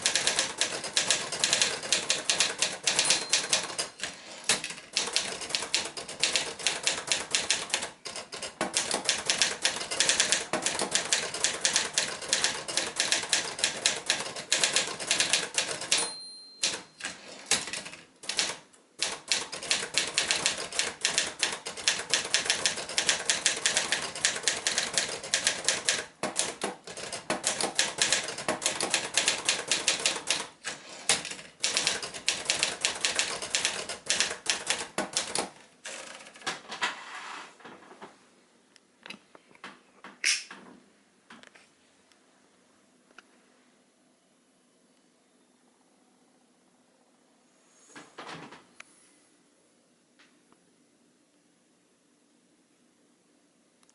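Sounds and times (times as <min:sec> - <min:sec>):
typewriter typing: 0:00.0 - 0:36.9
typewriter bell ding: 0:02.8 - 0:04.1, 0:15.7 - 0:17.3.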